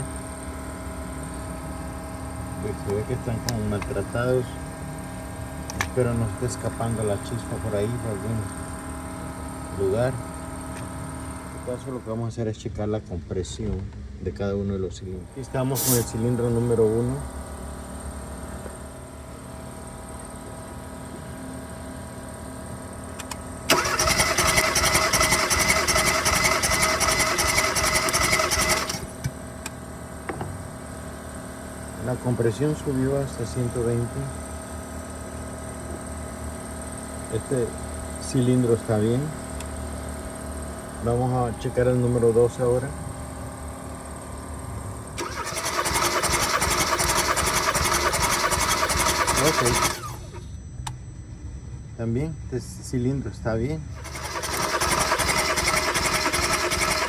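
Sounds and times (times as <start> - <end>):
starter motor cranking engine: 23.2 - 29.1, 45.2 - 50.4, 54.0 - 57.0.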